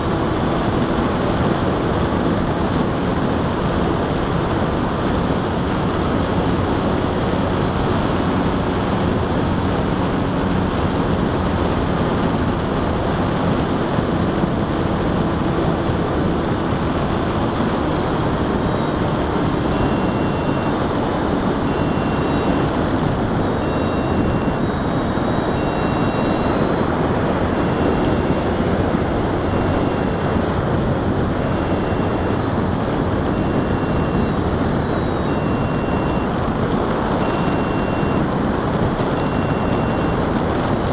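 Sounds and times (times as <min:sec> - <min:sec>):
wind and motor noise: 0:00.0 - 0:40.9
short high electronic beep: 0:19.7 - 0:20.8, 0:21.6 - 0:22.7, 0:23.5 - 0:26.6, 0:27.5 - 0:28.6, 0:29.4 - 0:30.5, 0:31.4 - 0:32.4, 0:33.3 - 0:34.4, 0:35.0 - 0:36.3, 0:37.2 - 0:38.3, 0:39.2 - 0:40.2.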